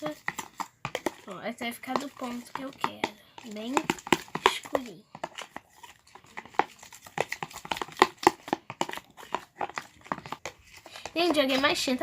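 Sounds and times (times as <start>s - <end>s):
spoon stirring sticky paint: 0.0s - 12.0s.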